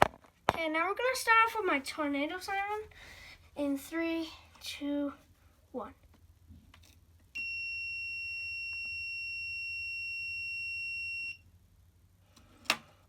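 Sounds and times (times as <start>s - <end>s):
high-pitched alarm siren tone: 7.4s - 11.4s.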